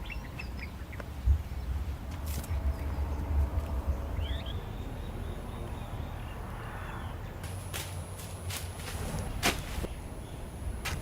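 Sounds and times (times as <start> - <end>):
gusty low rumble: 1.2 - 6.5.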